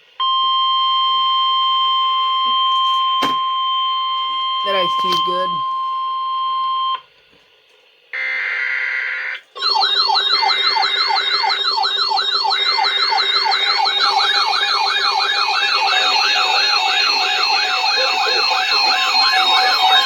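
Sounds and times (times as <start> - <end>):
siren-like attention signal: 9.6 - 20.0
harsh electronic burst: 10.5 - 20.0.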